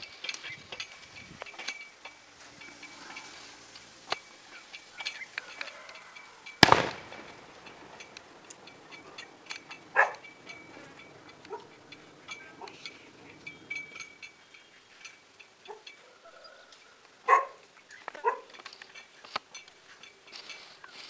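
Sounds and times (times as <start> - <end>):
dog barking: 9.9 - 10.2, 11.5 - 11.7, 17.3 - 17.6, 18.2 - 18.5.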